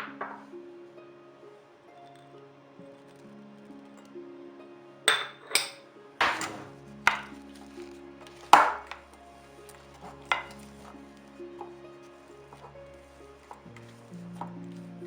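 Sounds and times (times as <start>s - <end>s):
dishes and utensils clattering: 0.0s - 0.5s, 5.1s - 11.0s
soft background music: 0.0s - 15.0s.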